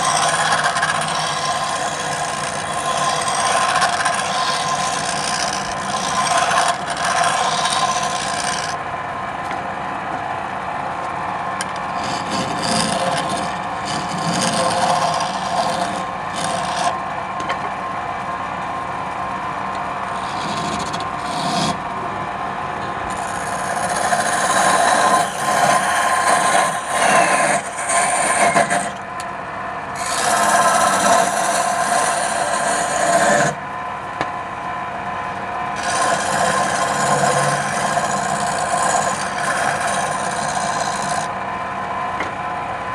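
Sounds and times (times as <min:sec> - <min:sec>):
tool scraping spinning wood: 0:00.0 - 0:08.8, 0:11.6 - 0:17.8, 0:20.0 - 0:22.0, 0:23.0 - 0:29.1, 0:30.0 - 0:33.6, 0:35.8 - 0:41.4
lathe motor whine: 0:00.0 - 0:42.9.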